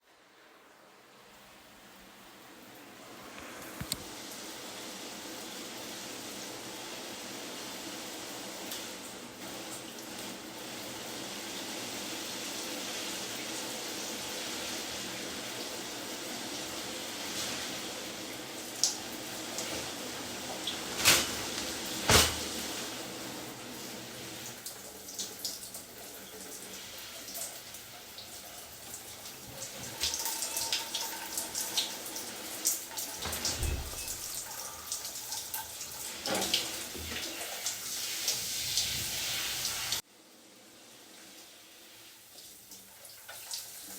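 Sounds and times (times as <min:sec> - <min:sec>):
rain falling: 0:25.2 - 0:40.0.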